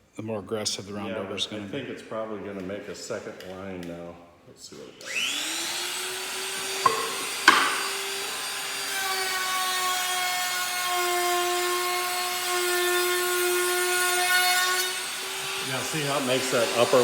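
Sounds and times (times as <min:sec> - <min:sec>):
router cutting wood: 0:05.0 - 0:17.0
sharp knock: 0:06.8 - 0:08.0.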